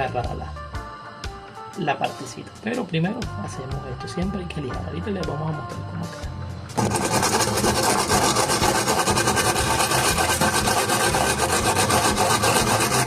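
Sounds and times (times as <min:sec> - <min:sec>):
sandpaper rasping on metal tubing: 0:06.8 - 0:13.0.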